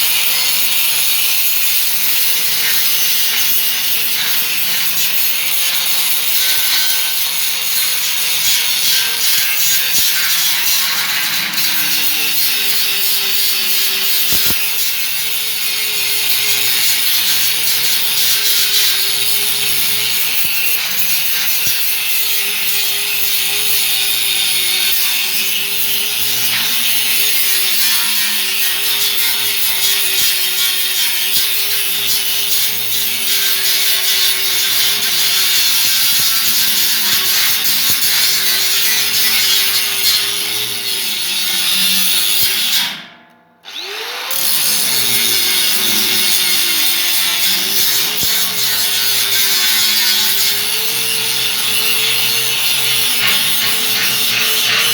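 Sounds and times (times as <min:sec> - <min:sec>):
power tool motor running: 0:43.7 - 0:54.9.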